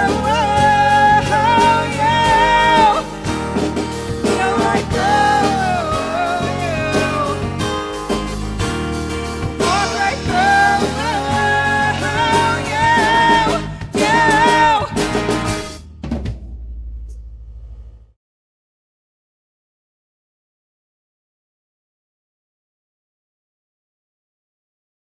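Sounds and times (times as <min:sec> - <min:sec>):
person singing: 0:00.0 - 0:08.2, 0:09.6 - 0:15.7
rock guitar: 0:00.0 - 0:15.8
drums: 0:00.0 - 0:18.1.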